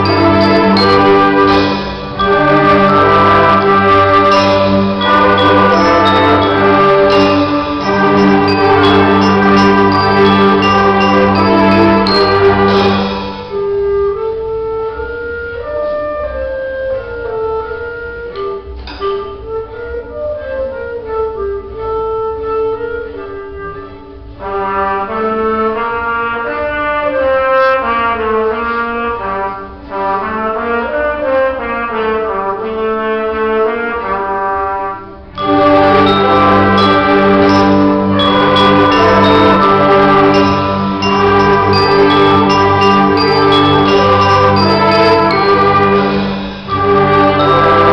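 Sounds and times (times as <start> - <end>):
loud full ensemble passage: 0.0 - 13.8, 33.6 - 47.9
wind instruments playing melody: 0.0 - 47.9.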